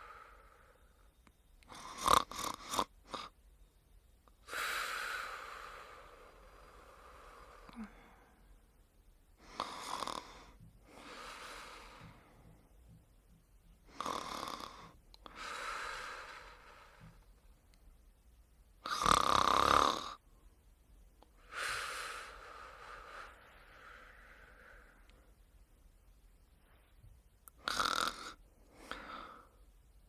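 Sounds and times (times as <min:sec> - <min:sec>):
person snoring: 0:09.4 - 0:12.4, 0:13.9 - 0:17.2, 0:18.8 - 0:20.2, 0:27.6 - 0:29.6.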